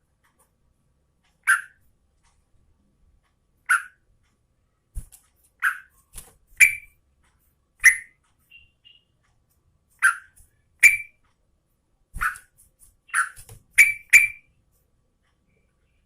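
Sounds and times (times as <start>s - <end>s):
bulbul calling: 6.6s - 6.9s, 7.8s - 9.1s, 10.0s - 11.2s, 13.1s - 14.5s.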